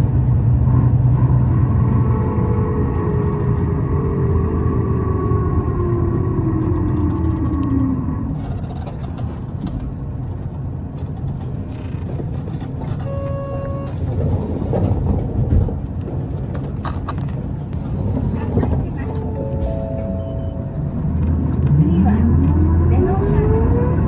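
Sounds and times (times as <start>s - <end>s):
bus engine and road rumble: 0.0s - 24.0s
short electronic beep: 19.2s - 20.9s.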